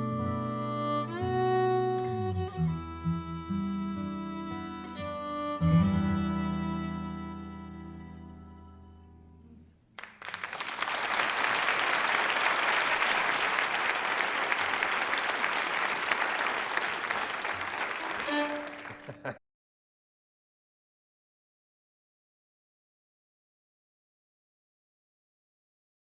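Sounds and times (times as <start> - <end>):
crowd applauding: 10.0 - 19.4.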